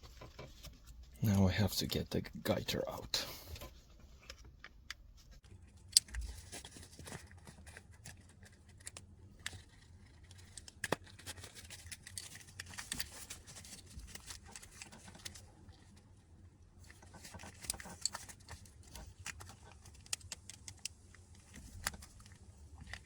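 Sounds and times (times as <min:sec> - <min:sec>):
scratching and rustling: 0:05.2 - 0:23.0.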